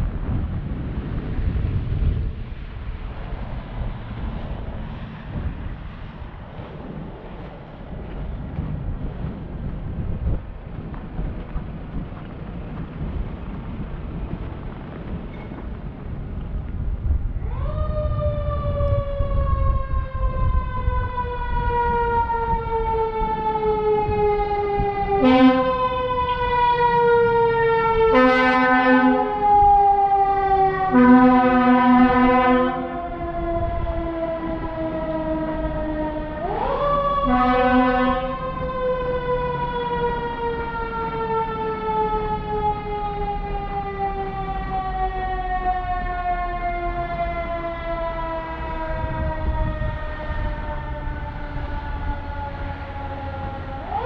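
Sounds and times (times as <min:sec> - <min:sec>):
emergency vehicle siren wailing: 0:17.2 - 0:54.0
short low horn note: 0:25.2 - 0:25.8.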